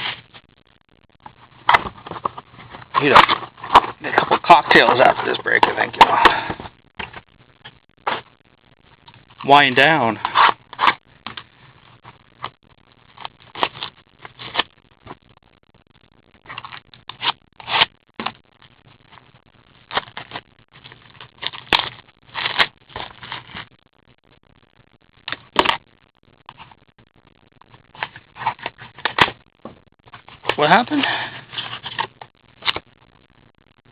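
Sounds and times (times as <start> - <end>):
rustles of wrapper and cards: 1.6 - 7.3, 9.4 - 12.5, 13.1 - 14.7, 19.9 - 23.7, 27.7 - 29.4, 30.1 - 32.8
card packs being torn open: 2.9 - 6.6, 19.9 - 23.6.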